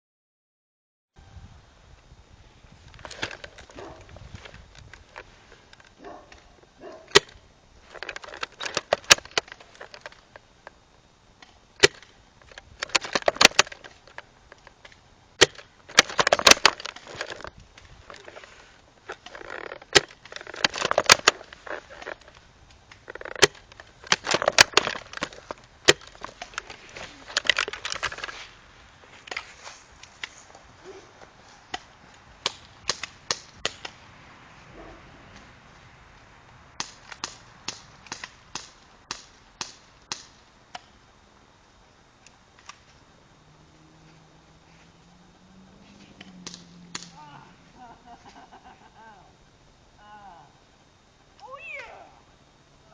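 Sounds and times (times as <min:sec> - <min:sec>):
rustling noise: 0:02.0 - 0:11.1, 0:15.6 - 0:40.0, 0:43.9 - 0:46.9
airsoft guns firing: 0:36.8 - 0:40.4.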